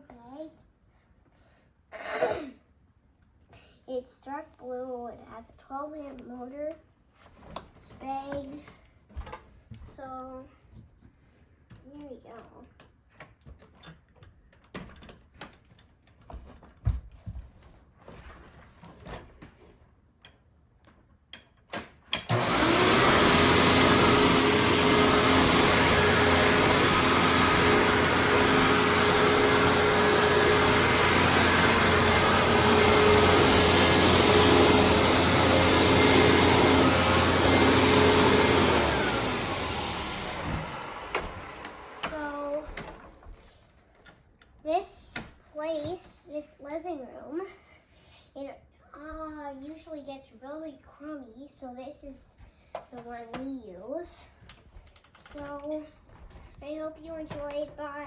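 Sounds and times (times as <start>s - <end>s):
vacuum cleaner running: 22.2s - 43.4s.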